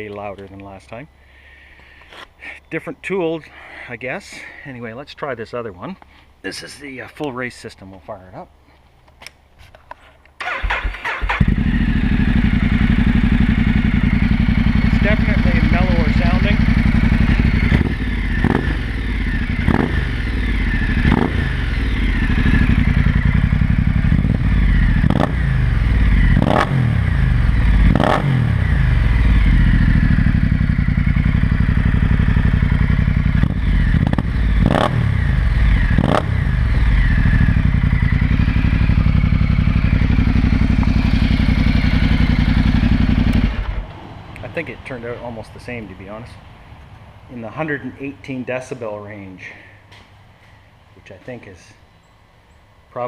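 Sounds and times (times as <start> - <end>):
motorcycle throttle blips: 10.4 - 44.6
motorcycle engine idling: 10.4 - 48.5.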